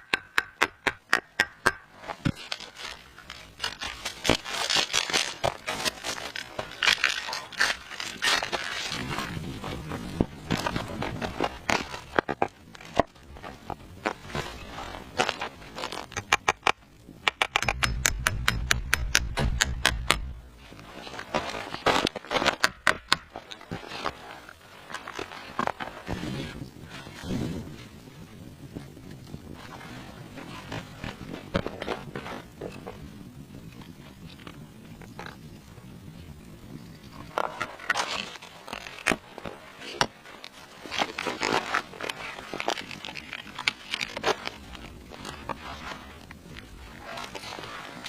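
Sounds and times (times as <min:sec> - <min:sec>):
crunching rustling handling noises: 0:02.0 - 0:16.2, 0:37.0 - 0:48.0
sharp clicks: 0:16.2 - 0:20.4.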